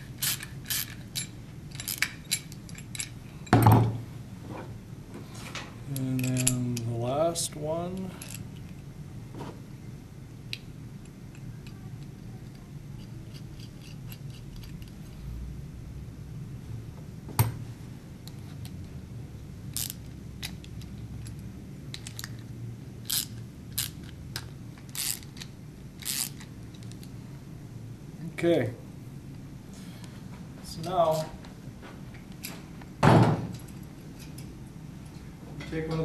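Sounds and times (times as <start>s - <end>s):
steady low hum: 0.0s - 36.0s
socket ratchet tightening nuts: 0.2s - 3.1s, 19.8s - 20.6s, 23.0s - 24.2s, 24.9s - 26.5s
metal clinks of bolts: 6.0s - 6.9s.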